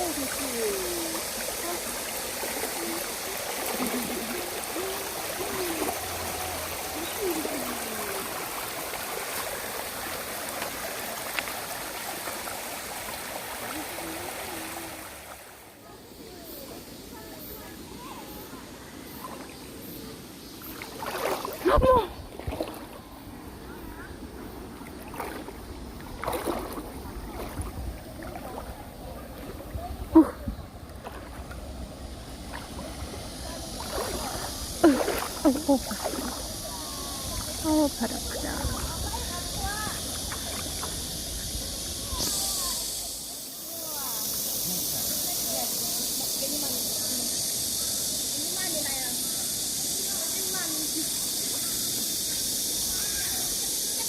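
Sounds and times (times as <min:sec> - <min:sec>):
stream rushing over rocks: 0:00.0 - 0:15.8, 0:24.7 - 0:43.0.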